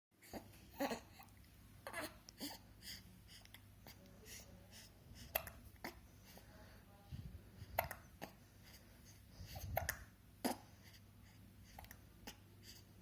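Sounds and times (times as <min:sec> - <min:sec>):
baby hiccuping: 0:09.8 - 0:10.7.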